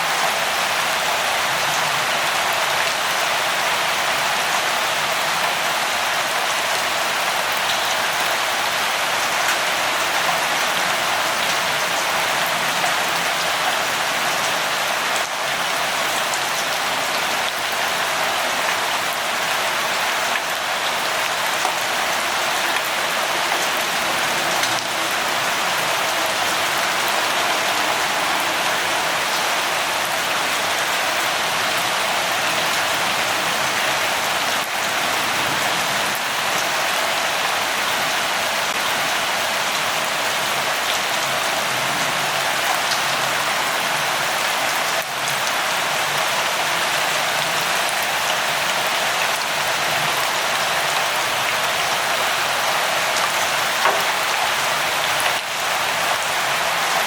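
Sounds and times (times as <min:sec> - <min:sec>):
light rain pattering: 0:00.0 - 0:57.0
rain drop ticks: 0:53.8 - 0:54.1.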